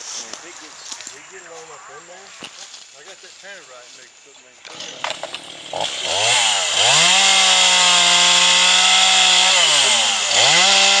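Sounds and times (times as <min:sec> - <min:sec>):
chainsaw revving: 0:04.6 - 0:11.0.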